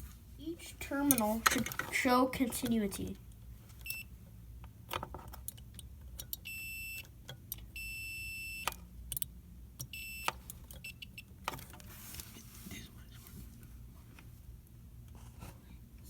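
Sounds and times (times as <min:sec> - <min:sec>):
multimeter beeping: 0:06.4 - 0:07.1, 0:07.8 - 0:08.8, 0:09.8 - 0:11.3.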